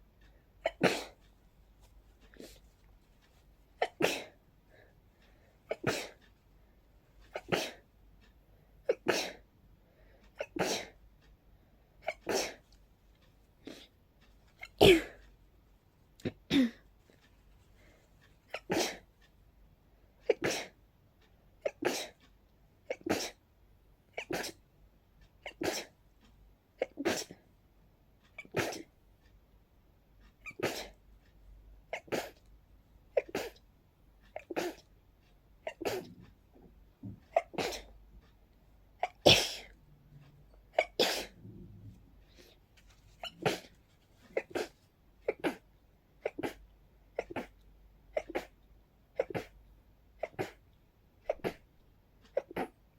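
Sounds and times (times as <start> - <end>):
person sneezing: 43.2 - 43.7, 44.4 - 44.7, 46.2 - 46.6.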